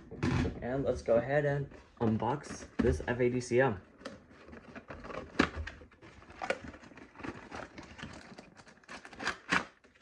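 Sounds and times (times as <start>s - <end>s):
packaging knocks and scrapes: 3.9s - 10.0s.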